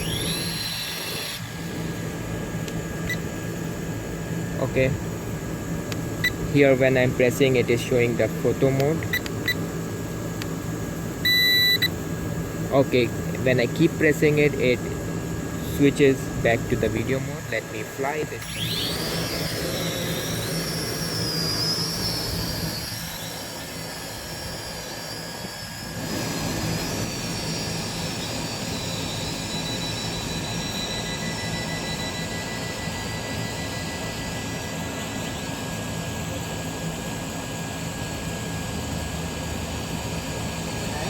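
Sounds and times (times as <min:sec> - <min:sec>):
toy drone propellers whirring: 0:00.0 - 0:03.2, 0:15.7 - 0:34.7.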